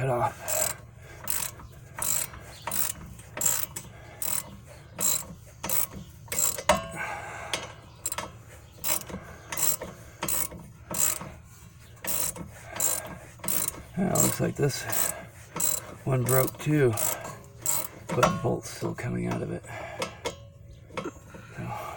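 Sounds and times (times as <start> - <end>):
socket ratchet clicking: 0.5 - 6.8, 8.0 - 11.3, 12.0 - 18.0.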